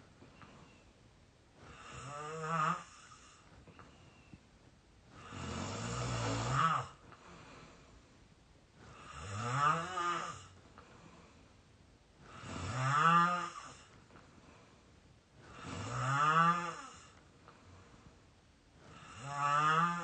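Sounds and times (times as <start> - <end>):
man snoring squeakily: 1.7 - 3.4, 5.2 - 7.0, 8.9 - 10.6, 12.3 - 13.9, 15.5 - 17.2, 18.9 - 20.0.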